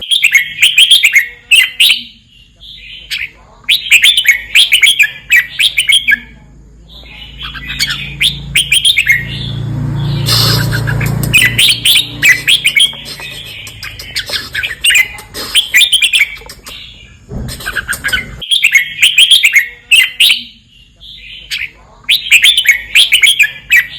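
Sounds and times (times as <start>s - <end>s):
bird singing chirpy phrases: 0.0s - 23.9s
broad rushing noise: 9.2s - 18.4s.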